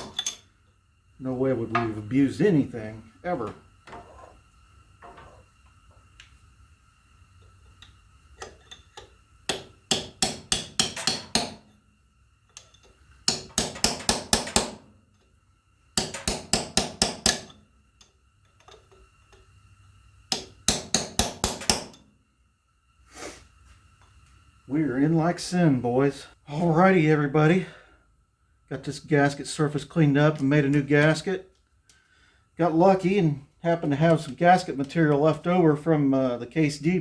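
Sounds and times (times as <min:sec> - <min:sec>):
hammer striking steel punch: 0:09.5 - 0:11.7, 0:13.3 - 0:14.9, 0:16.0 - 0:17.6, 0:20.3 - 0:22.0.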